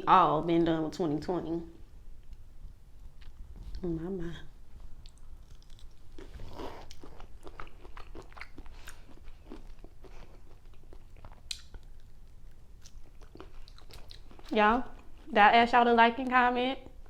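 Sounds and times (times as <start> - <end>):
person chewing: 4.8 - 15.3.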